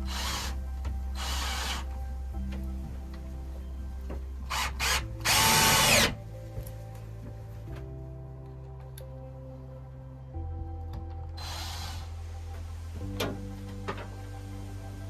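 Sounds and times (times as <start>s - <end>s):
cordless drill driving screws: 0.1s - 0.6s, 1.2s - 1.9s, 4.5s - 6.2s.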